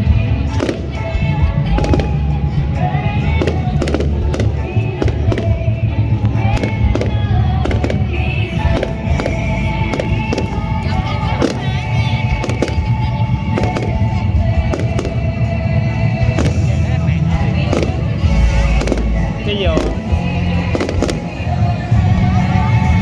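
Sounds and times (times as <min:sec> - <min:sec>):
music playing: 0:00.0 - 0:23.0
fireworks bangs and crackles: 0:00.2 - 0:23.0.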